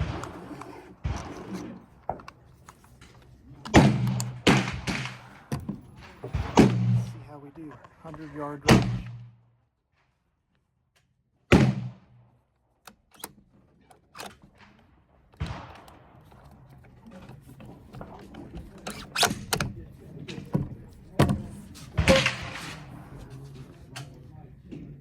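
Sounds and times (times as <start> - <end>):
rifle and gear being handled: 0.0 - 9.3, 12.6 - 24.3
rifle shot: 3.7 - 7.3, 8.7 - 9.4, 11.5 - 12.2, 15.4 - 16.2, 22.0 - 22.9.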